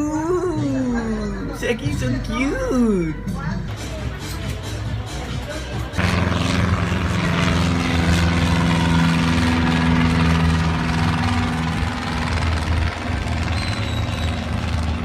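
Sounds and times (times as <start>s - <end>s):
large engine humming: 0.0s - 15.0s.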